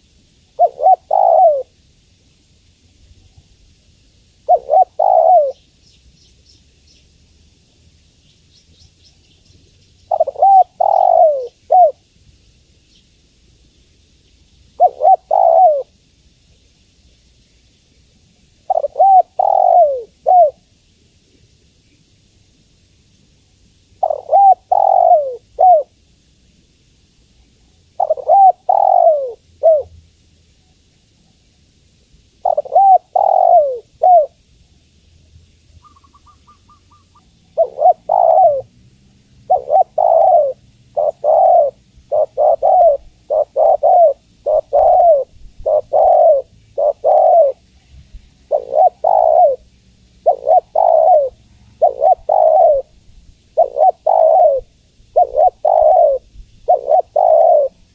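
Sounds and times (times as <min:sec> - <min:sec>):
dove cooing: 0:00.0 - 0:01.8, 0:04.4 - 0:05.6, 0:10.1 - 0:12.0, 0:14.8 - 0:16.0, 0:18.6 - 0:20.7, 0:24.0 - 0:26.0, 0:28.0 - 0:30.0, 0:32.4 - 0:34.4, 0:35.8 - 0:38.8, 0:39.4 - 0:47.7, 0:48.3 - 0:57.9.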